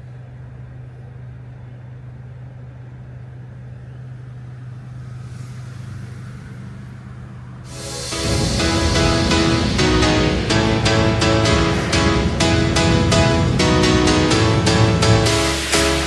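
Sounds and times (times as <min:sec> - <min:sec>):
vehicle engine humming: 0:03.2 - 0:16.0
hiss: 0:04.9 - 0:16.0.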